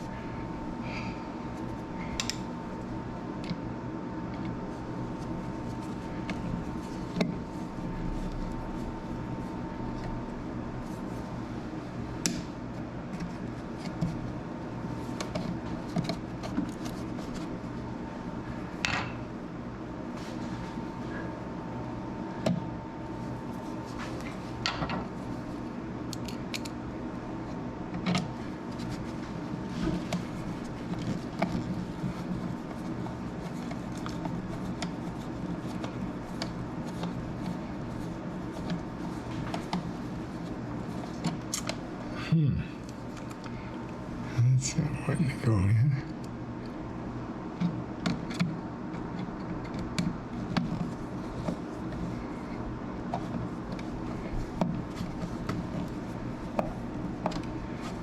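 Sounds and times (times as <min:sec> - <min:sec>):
steady low hum: 0:00.0 - 0:58.0
thin steady whine: 0:26.9 - 0:46.8.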